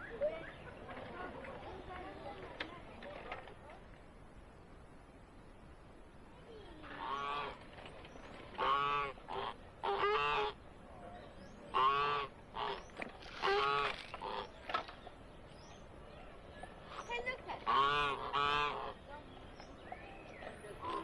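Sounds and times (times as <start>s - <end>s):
geese honking: 6.8s - 7.6s, 8.5s - 10.6s, 11.7s - 14.6s, 17.5s - 19.1s.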